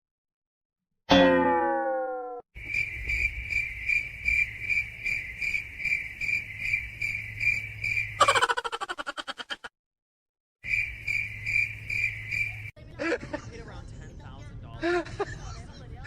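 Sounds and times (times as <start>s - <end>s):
ringing tone sliding downward: 1.1s - 2.4s
crickets chirping: 2.6s - 9.3s, 10.6s - 12.8s.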